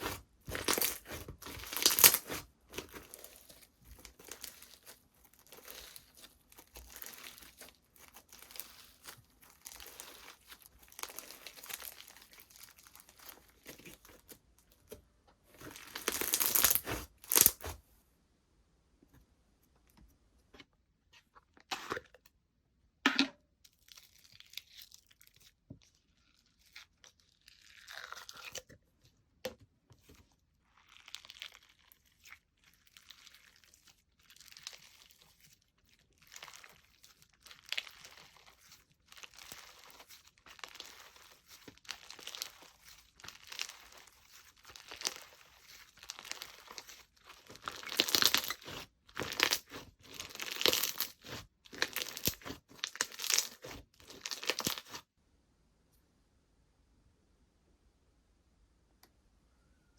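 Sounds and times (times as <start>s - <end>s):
slime crunching and crackling: 0.0s - 14.9s, 15.5s - 17.8s, 23.7s - 28.7s, 30.6s - 55.1s.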